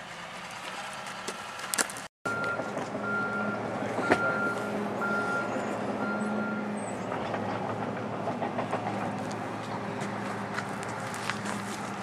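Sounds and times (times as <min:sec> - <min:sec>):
reversing alarm beeping: 0:02.3 - 0:06.8.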